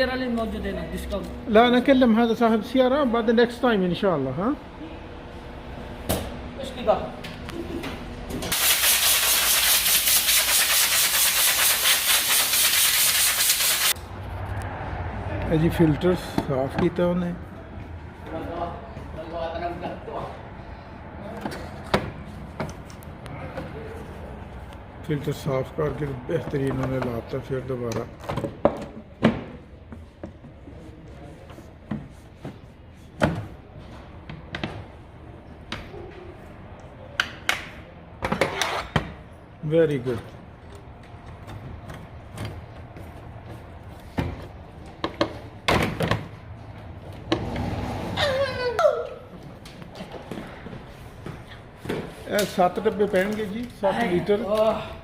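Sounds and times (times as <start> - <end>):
compressed air gun hissing: 8.6 - 13.9.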